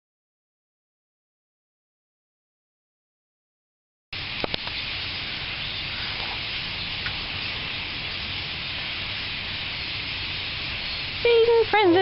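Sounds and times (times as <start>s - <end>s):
flock of starlings chattering: 4.6s - 12.0s.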